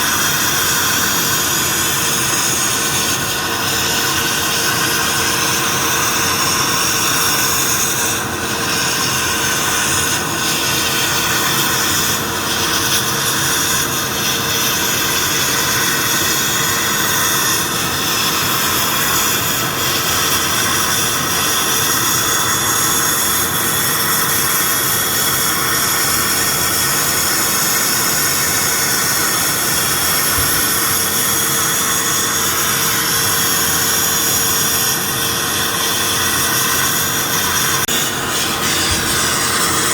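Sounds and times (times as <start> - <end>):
machine hum: 34.9 - 39.9
sandblasting air hiss: 36.4 - 39.9.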